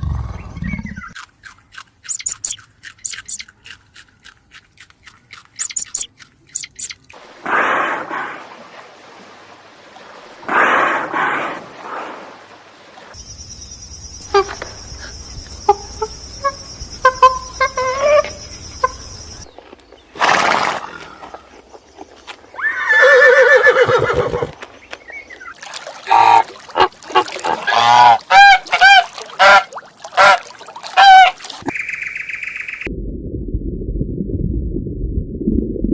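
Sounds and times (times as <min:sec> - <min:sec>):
animal calls: 0:14.2 - 0:19.1.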